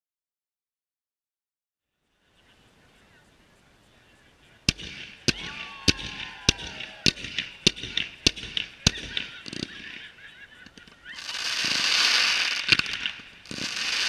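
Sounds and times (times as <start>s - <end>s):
fireworks crackling: 2.3s - 14.0s
fireworks bangs: 4.6s - 14.0s
falling firework whistle: 5.3s - 7.5s, 11.1s - 14.0s.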